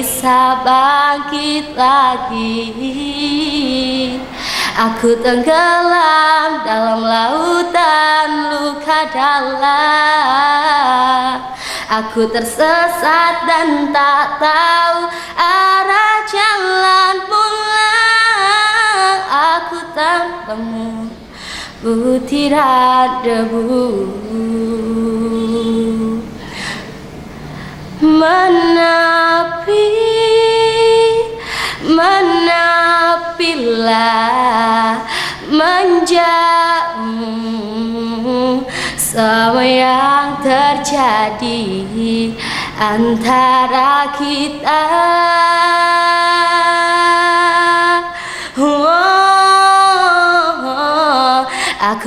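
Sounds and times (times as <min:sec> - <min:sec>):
woman singing pop ballad: 0:00.0 - 0:26.8, 0:28.0 - 0:52.0
singer breathing in: 0:04.3 - 0:04.8, 0:11.5 - 0:11.9, 0:21.2 - 0:21.8, 0:26.4 - 0:27.9, 0:31.4 - 0:31.8, 0:35.1 - 0:35.4, 0:38.7 - 0:39.0, 0:42.4 - 0:42.8, 0:48.1 - 0:48.6, 0:51.5 - 0:51.8.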